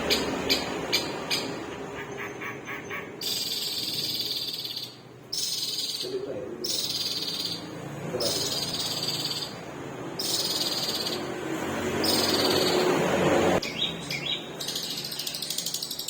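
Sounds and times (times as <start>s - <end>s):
shrike singing buzzy phrases: 0.0s - 9.6s.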